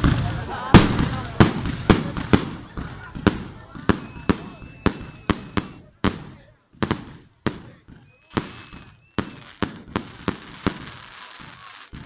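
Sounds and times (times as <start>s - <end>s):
fireworks bangs: 0.0s - 12.0s
faint firework whistle: 3.6s - 5.9s, 7.6s - 12.0s.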